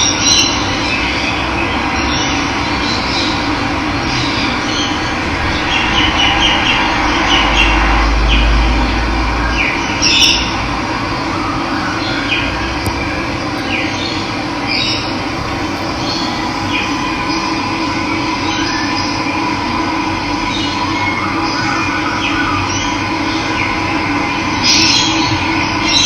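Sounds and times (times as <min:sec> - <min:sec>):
low rumble: 0:01.4 - 0:11.5, 0:12.4 - 0:20.5
birds chirping: 0:11.9 - 0:19.2.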